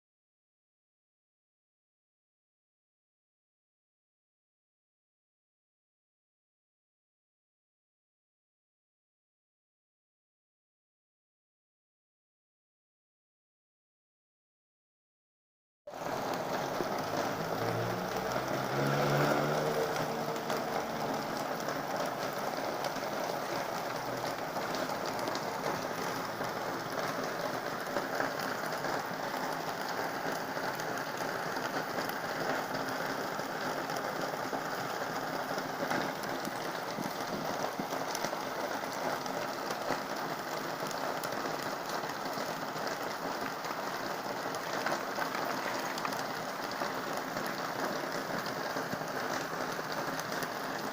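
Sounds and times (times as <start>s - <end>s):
heavy rain pattering: 15.9s - 50.9s.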